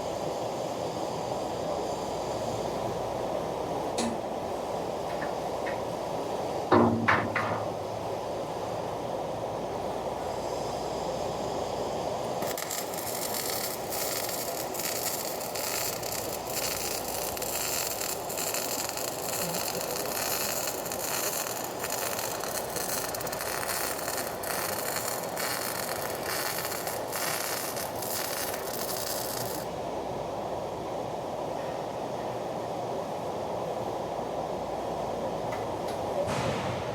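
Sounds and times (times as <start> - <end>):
steady background noise: 0.0 - 36.9
electric arc welding crackling: 12.2 - 29.7.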